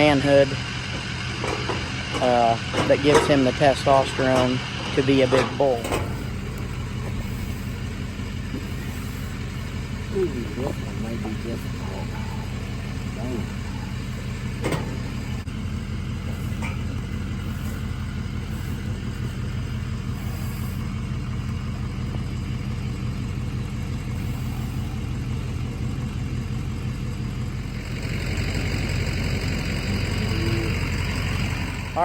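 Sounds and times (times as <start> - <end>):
vehicle engine idling: 0.0 - 32.0.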